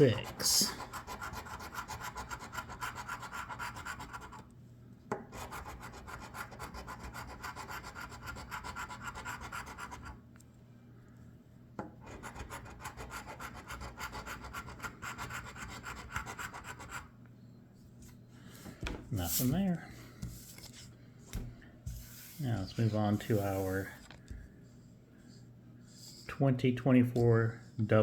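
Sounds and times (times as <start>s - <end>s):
lottery ticket being scratched: 22.5s - 24.0s.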